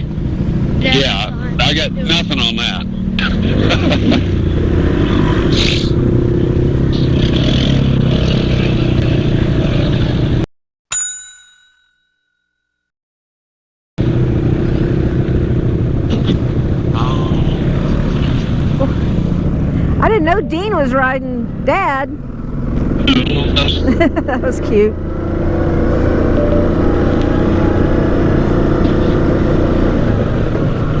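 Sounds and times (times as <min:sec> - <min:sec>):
atv engine running: 0:00.0 - 0:10.4, 0:14.0 - 0:31.0
bell-like ding: 0:10.9 - 0:12.6, 0:26.0 - 0:27.9.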